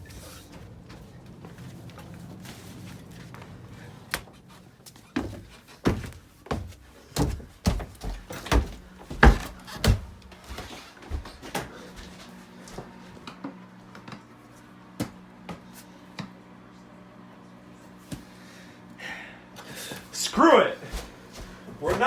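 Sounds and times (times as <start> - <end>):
footsteps thudding indoors: 0.1 - 12.9, 20.8 - 22.0.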